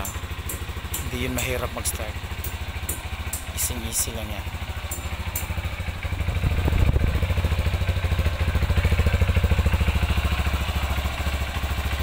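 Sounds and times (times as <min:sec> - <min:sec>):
motorcycle engine idling: 0:00.0 - 0:12.0.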